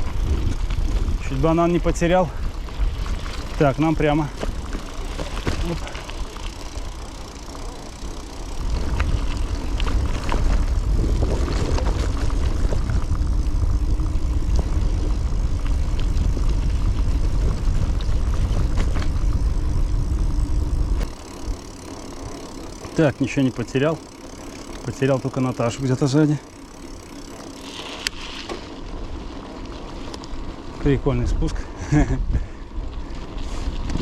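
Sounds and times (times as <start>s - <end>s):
wind buffeting microphone: 0.0s - 7.2s, 7.9s - 21.7s
bicycle clicks and rattles: 0.0s - 34.0s.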